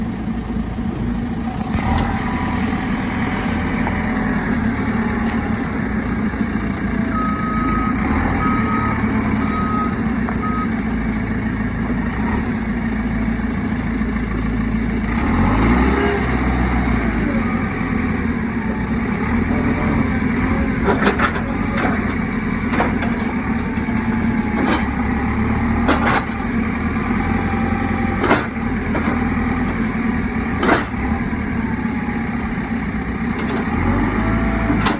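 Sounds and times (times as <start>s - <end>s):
diesel engine running: 0.0s - 34.9s
reversing alarm beeps: 7.0s - 11.0s.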